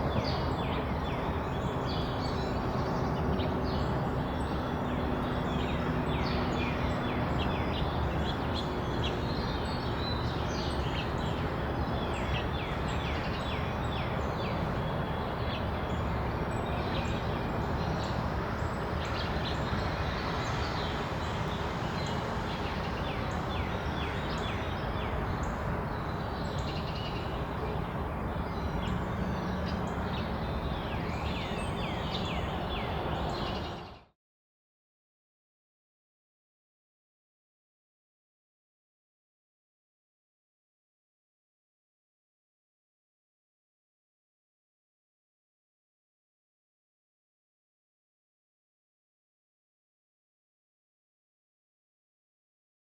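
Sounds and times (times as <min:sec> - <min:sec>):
outdoor background hum: 0:00.0 - 0:34.2.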